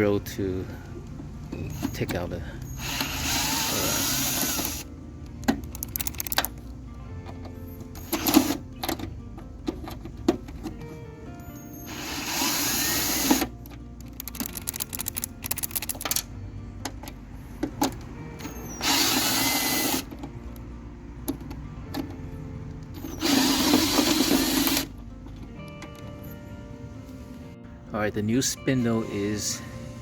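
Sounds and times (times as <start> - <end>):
power drill spinning out bolts: 1.7 - 4.9, 5.6 - 6.5, 7.8 - 8.7, 11.6 - 16.3, 18.5 - 20.2, 23.0 - 24.9
small clicks: 5.4 - 9.1, 13.7 - 17.2.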